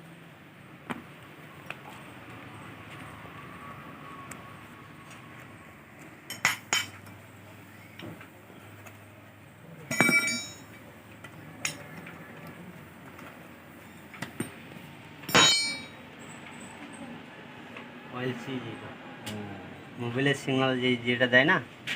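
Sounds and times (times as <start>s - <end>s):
metal tools clinking: 9.9s - 10.8s, 15.3s - 16.3s.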